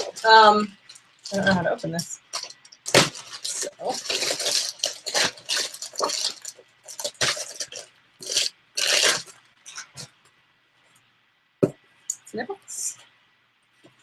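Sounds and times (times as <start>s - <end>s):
parcel packaging crinkling: 2.3s - 10.1s.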